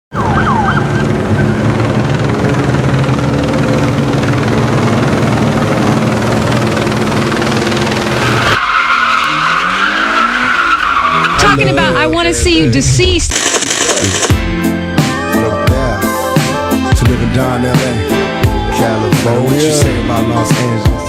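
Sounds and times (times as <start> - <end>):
car engine running loudly: 0.1 - 11.6
tyres skidding: 0.1 - 11.6
high narrow squealing: 3.8 - 11.6.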